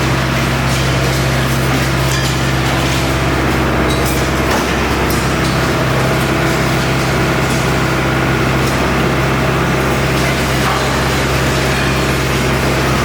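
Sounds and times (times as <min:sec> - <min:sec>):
diesel engine running: 0:00.0 - 0:13.0.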